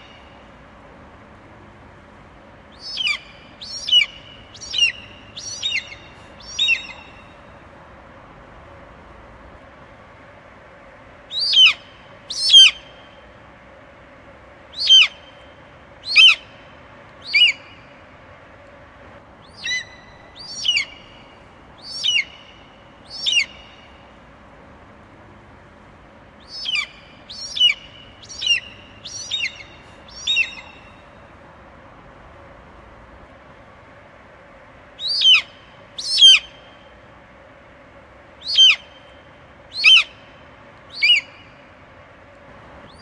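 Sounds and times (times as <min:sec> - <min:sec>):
faint steady hum: 0:00.0 - 0:43.0
eagle calling: 0:02.7 - 0:07.5, 0:11.3 - 0:12.9, 0:14.7 - 0:16.6, 0:17.2 - 0:17.9, 0:19.4 - 0:24.0, 0:26.4 - 0:31.2, 0:35.0 - 0:36.7, 0:38.4 - 0:41.6.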